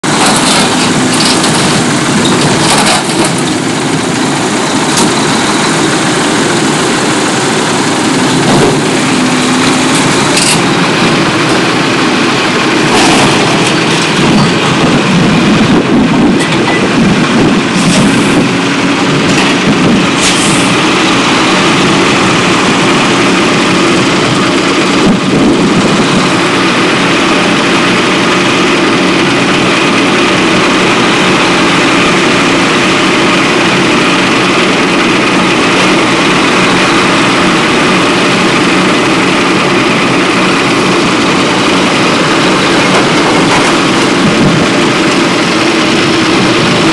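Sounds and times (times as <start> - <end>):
metal clanks and crunches: 0.0 - 3.8, 8.2 - 11.6, 12.8 - 14.9, 42.1 - 45.2
heavy machine engine running: 0.0 - 46.9.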